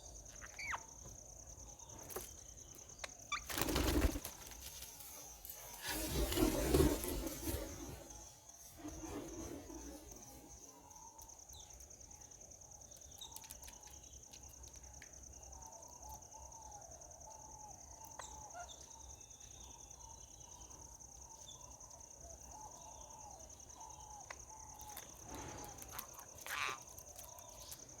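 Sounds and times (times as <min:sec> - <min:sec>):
bird chirps: 0:00.0 - 0:04.0
rustle: 0:00.2 - 0:12.2, 0:22.5 - 0:28.0.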